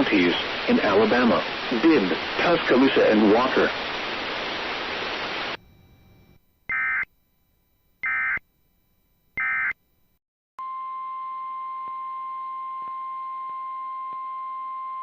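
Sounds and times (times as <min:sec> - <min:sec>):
steady warning alarm tone: 0:05.7 - 0:07.0, 0:08.0 - 0:08.4
digital data tone bursts: 0:06.7 - 0:07.1.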